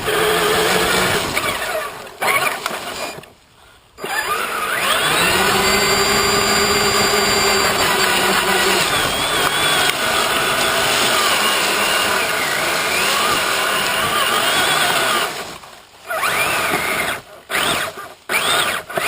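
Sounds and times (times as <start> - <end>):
electric motor and gears whining: 0.0 - 3.3, 4.0 - 19.0.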